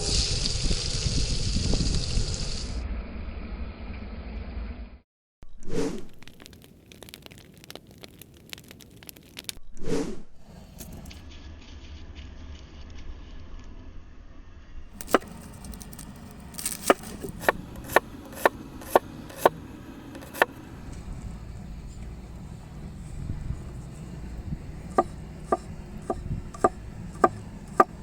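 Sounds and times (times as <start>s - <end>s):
knife chopping on wooden board: 15.0s - 15.3s, 16.6s - 19.6s, 20.2s - 20.5s, 24.9s - 28.0s.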